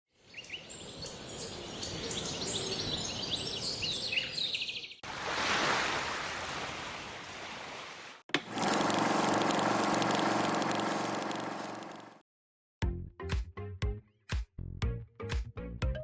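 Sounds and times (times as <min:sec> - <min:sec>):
small birds chirping: 0:00.1 - 0:05.0.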